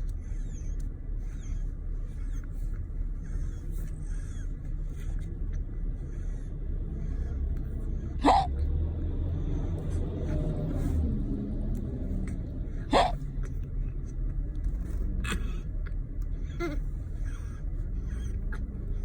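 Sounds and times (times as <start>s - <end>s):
steady low rumble: 0.0s - 19.0s.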